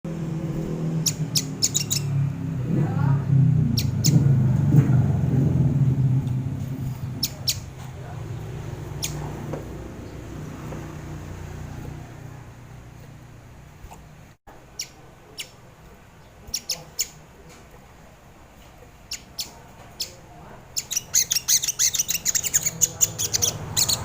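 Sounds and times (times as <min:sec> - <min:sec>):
low rumble: 0:00.1 - 0:13.7
bird chirping: 0:00.5 - 0:02.4, 0:03.6 - 0:04.3, 0:05.9 - 0:10.9, 0:14.7 - 0:17.2, 0:19.0 - 0:24.0.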